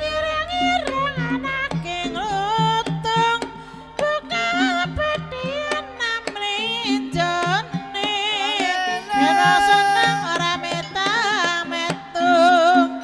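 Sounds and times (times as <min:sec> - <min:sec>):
tuned percussion low notes: 0:00.0 - 0:05.9
hand drum strokes: 0:00.0 - 0:12.2
high voice singing with vibrato: 0:00.0 - 0:13.0.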